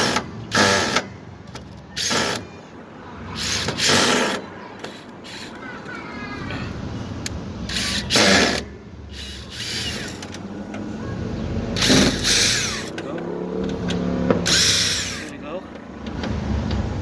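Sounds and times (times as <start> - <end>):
cordless drill running: 7.7 - 10.3, 11.8 - 13.0, 14.4 - 15.4.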